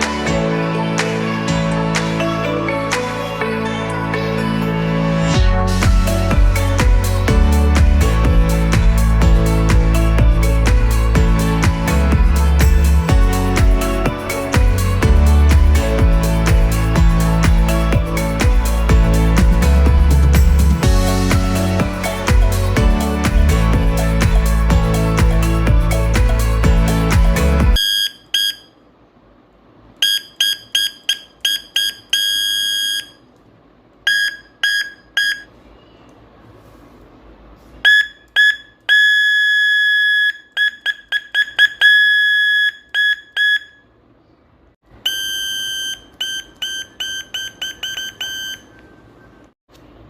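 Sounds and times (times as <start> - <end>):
high buzzer beeps from speaker: 27.8 - 28.7, 30.0 - 33.2, 34.1 - 35.5, 37.9 - 43.8, 45.1 - 48.8.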